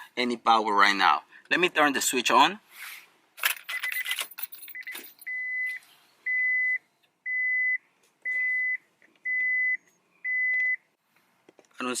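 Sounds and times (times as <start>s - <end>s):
dashboard warning chime beeping: 4.7s - 10.8s.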